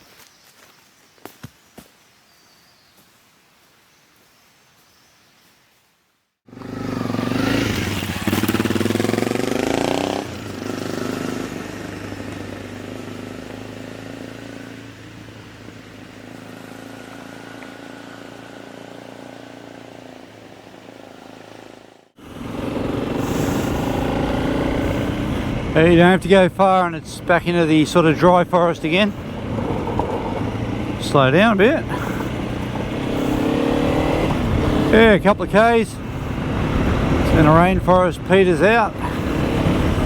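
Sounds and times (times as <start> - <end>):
motorcycle engine riding: 6.5 - 40.0.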